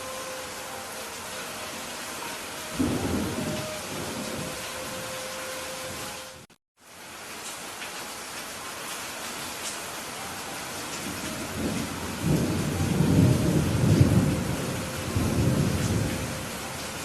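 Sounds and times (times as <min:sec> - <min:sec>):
steady rain: 0:00.0 - 0:17.0
rolling thunder: 0:02.8 - 0:05.1, 0:11.0 - 0:16.7.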